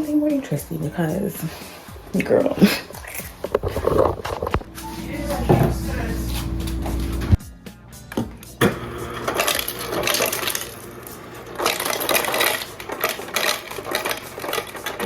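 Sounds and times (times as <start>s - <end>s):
small hard objects clinking: 11.4s - 15.0s.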